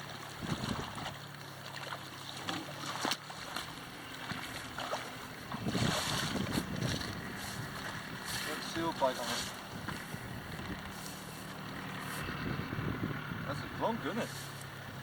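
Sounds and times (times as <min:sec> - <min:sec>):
river water flowing: 0:00.0 - 0:12.2, 0:13.8 - 0:15.0
wind on microphone: 0:00.4 - 0:01.1, 0:05.3 - 0:11.0, 0:11.8 - 0:13.8.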